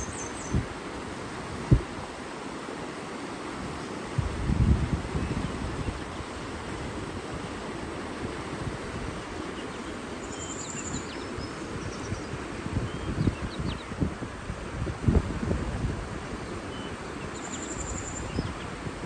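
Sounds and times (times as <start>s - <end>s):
small birds chirping: 0.0s - 0.6s, 9.5s - 14.0s, 16.7s - 18.7s
rushing water: 0.0s - 19.0s.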